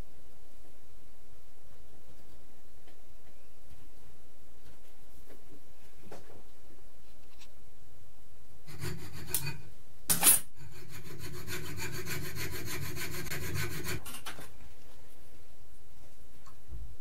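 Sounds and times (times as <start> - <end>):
hand tool rubbing strokes: 8.7 - 9.6, 10.6 - 14.1.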